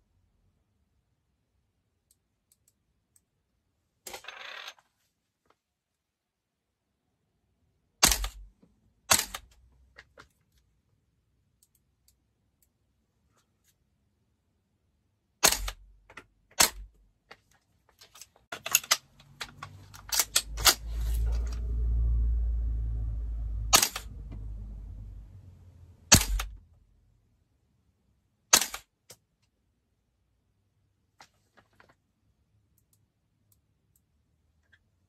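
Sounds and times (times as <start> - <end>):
low rumbling handling noise: 19.1 - 26.7.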